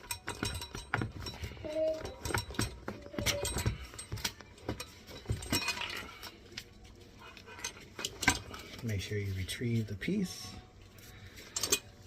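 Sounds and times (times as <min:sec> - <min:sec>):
metal knocks and clinks: 0:00.0 - 0:06.4, 0:07.5 - 0:08.7.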